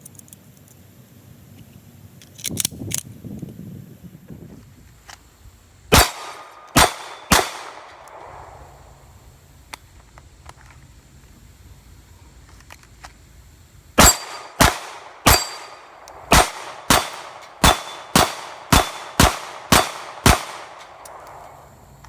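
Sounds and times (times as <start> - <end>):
pistol shots: 5.9 - 8.5, 14.0 - 21.5.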